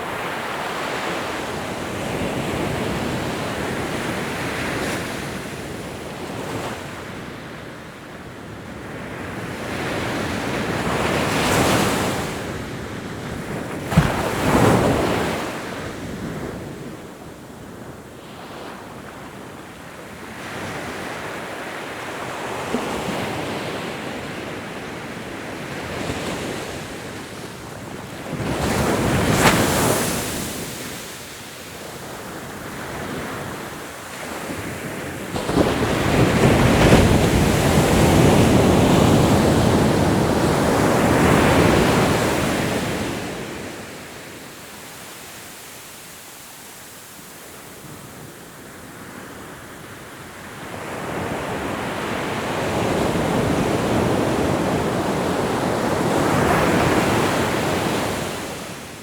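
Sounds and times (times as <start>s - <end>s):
ocean waves washing: 26.7s - 44.4s.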